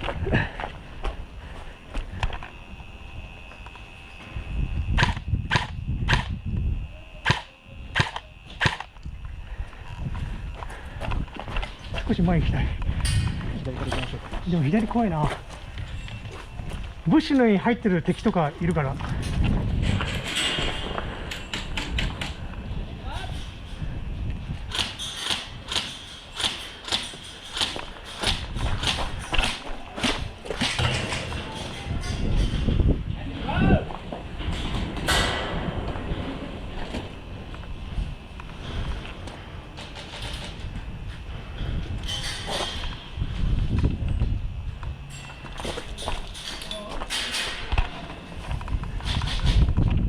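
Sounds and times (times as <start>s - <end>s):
footsteps crunching: 0.0s - 4.5s, 8.6s - 20.1s
airsoft gun shots: 5.0s - 6.3s, 7.2s - 8.9s.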